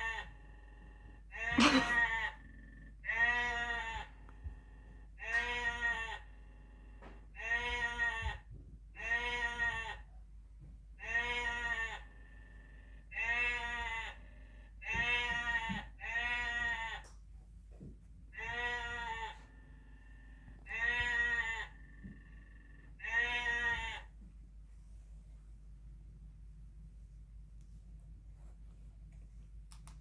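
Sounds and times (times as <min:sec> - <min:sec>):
sheep bleating over tv speaker: 0:00.0 - 0:00.4, 0:01.3 - 0:04.2, 0:05.2 - 0:06.4, 0:07.3 - 0:10.1, 0:11.0 - 0:12.1, 0:13.1 - 0:17.1, 0:18.4 - 0:19.5, 0:20.6 - 0:24.1.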